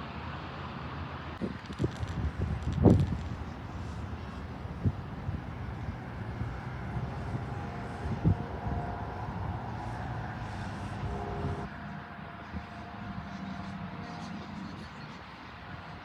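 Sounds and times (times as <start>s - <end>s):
faint whine: 1.4s - 11.7s
jet engines rumbling: 1.4s - 11.7s.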